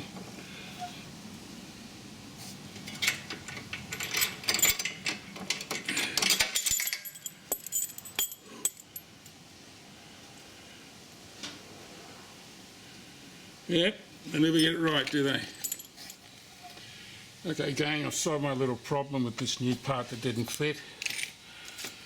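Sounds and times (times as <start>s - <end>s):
small metal parts clinking: 2.9s - 9.4s, 14.5s - 16.2s, 20.5s - 22.0s.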